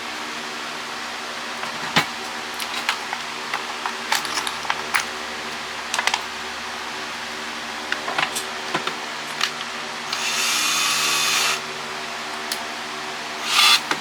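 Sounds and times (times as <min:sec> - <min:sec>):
power drill whirring: 0:10.1 - 0:11.7, 0:13.4 - 0:14.0.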